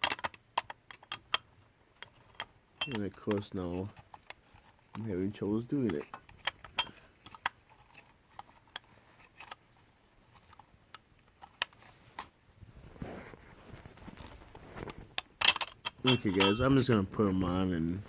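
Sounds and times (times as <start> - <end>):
clicks of toy parts handled: 0.0 - 5.1, 5.8 - 12.3, 15.1 - 16.6.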